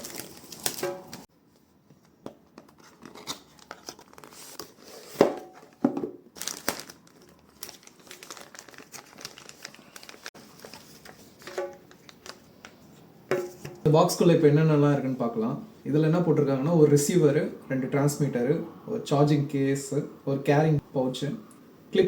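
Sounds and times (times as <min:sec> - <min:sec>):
packaging crinkling and tearing: 0:00.0 - 0:01.3, 0:02.8 - 0:05.8, 0:06.4 - 0:12.8.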